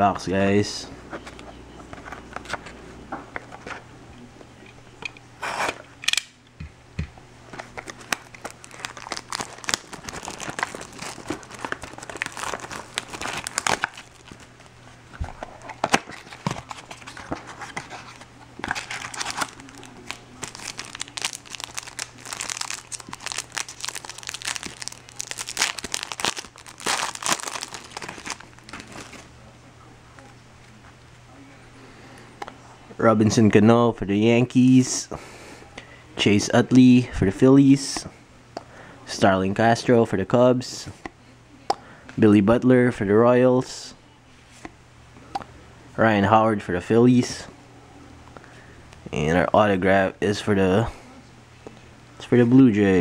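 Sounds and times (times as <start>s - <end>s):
card packs being torn open: 7.5s - 14.7s, 15.3s - 29.3s
wrappers crinkling: 7.6s - 14.7s, 15.3s - 29.3s.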